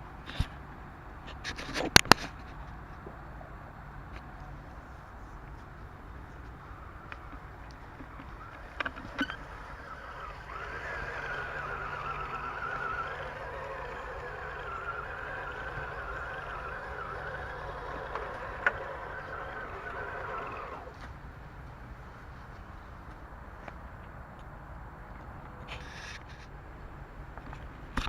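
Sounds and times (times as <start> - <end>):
electric motor and gearbox whining: 6.4 - 21.2.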